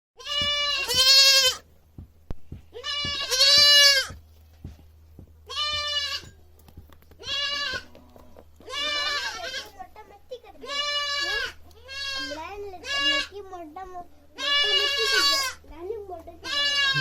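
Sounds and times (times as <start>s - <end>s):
young goat bleating: 0.2s - 1.7s, 2.7s - 4.2s, 5.5s - 6.4s, 7.2s - 8.0s, 8.6s - 9.8s, 10.6s - 13.4s, 14.4s - 15.7s, 16.4s - 17.0s.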